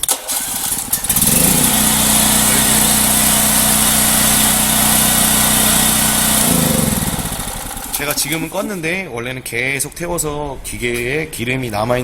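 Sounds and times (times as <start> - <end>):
generator engine running: 0.0 - 8.8
generator starter cranking: 0.0 - 8.8.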